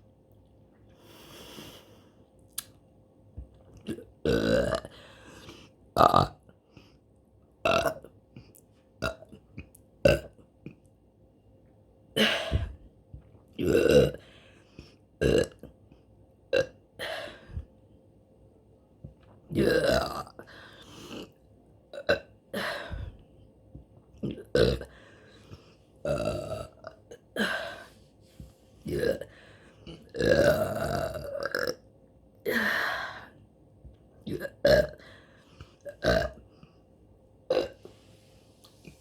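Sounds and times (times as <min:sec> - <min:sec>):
woman burping: 0:12.2 - 0:12.8, 0:22.0 - 0:23.1, 0:26.1 - 0:27.9, 0:28.9 - 0:29.3, 0:29.9 - 0:31.8, 0:34.3 - 0:35.0, 0:35.9 - 0:36.4, 0:37.5 - 0:37.8.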